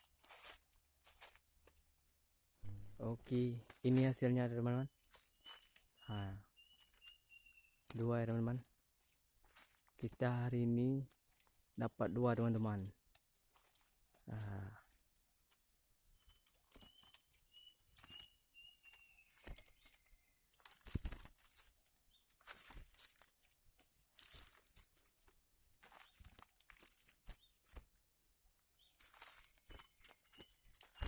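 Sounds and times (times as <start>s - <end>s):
rustling and crinkling from handling: 0.0s - 31.0s
bird calling: 2.6s - 4.0s, 4.9s - 8.8s, 16.0s - 20.6s.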